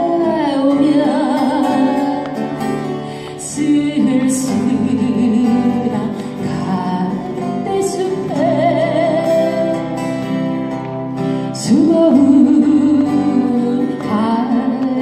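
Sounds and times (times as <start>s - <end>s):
woman singing ballad with vibrato: 0.0s - 10.6s, 11.3s - 15.0s
acoustic guitar: 0.0s - 15.0s.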